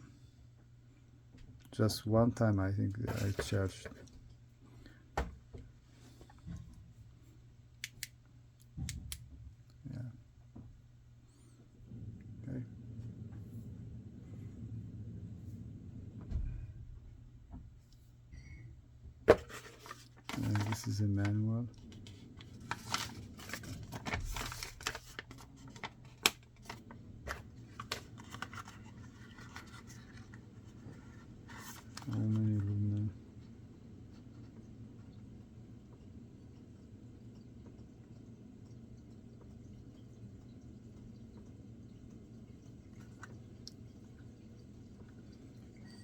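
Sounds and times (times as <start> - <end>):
paper rustling and crinkling: 3.1 - 3.9, 19.3 - 21.2, 21.8 - 32.6.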